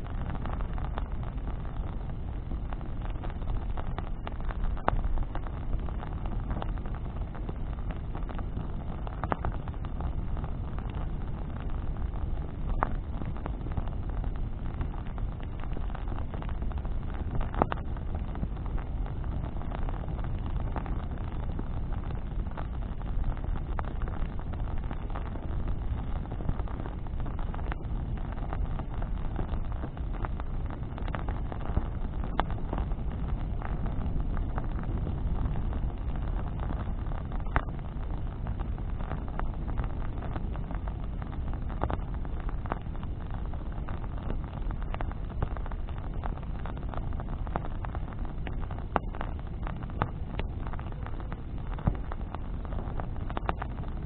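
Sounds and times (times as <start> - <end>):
bonfire rushing: 0.0 - 54.0
fire crackling and popping: 0.0 - 54.0.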